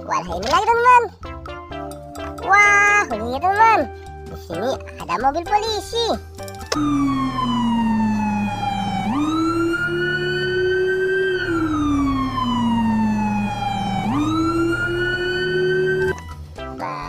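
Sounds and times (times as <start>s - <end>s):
police siren wailing: 6.7s - 16.3s
steady low hum: 6.8s - 16.1s.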